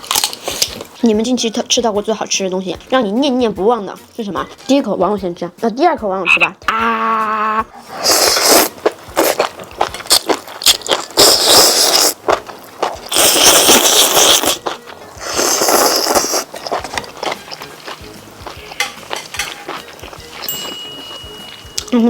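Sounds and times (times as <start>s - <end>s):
chewing crunchy food: 0.0s - 1.0s, 7.7s - 22.0s.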